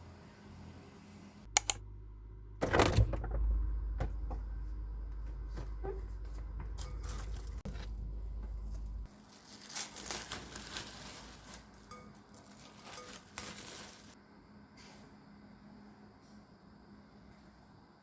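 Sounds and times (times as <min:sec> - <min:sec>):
low steady hum: 0:01.5 - 0:14.7
crinkling and tapping: 0:04.0 - 0:14.2.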